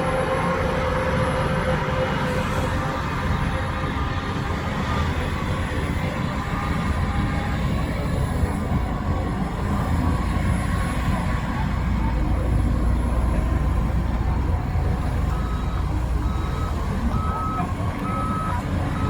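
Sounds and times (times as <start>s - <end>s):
diesel machinery engine running: 0.0s - 19.0s
reversing alarm beeping: 15.3s - 19.0s.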